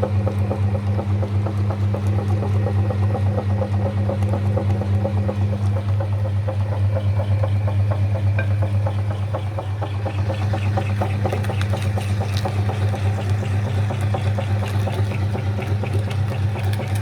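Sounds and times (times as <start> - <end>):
electric meat grinder running: 0.0 - 17.0.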